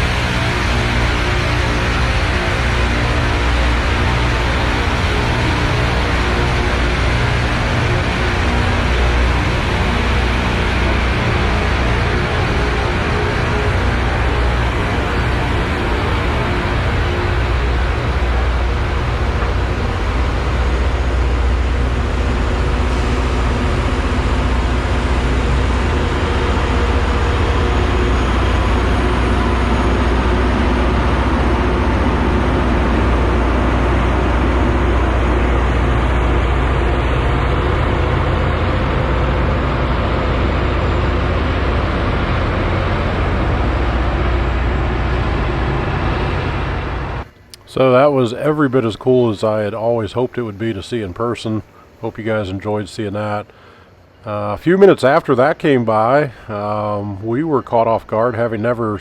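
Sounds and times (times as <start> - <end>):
deep engine hum: 0.0 - 52.1
rail grinding noise: 0.0 - 59.0.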